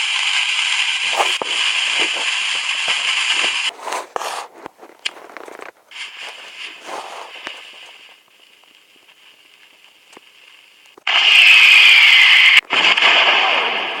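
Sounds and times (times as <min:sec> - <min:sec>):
firework hissing: 0:00.0 - 0:14.0
faint crackling: 0:00.7 - 0:11.2.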